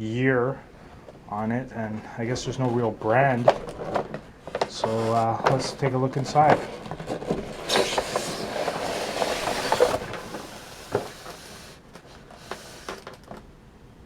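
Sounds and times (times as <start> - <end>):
cardboard box rustling and scraping: 2.4 - 13.3.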